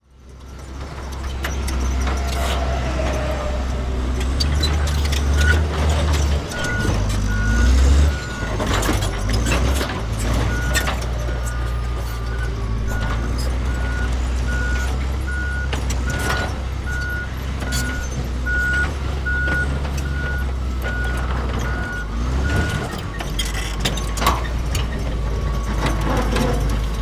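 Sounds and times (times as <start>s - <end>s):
bulldozer engine rumbling: 0.0s - 27.0s
metal clanks and knocks: 15.6s - 27.0s
backup alarm beeping: 16.9s - 22.8s.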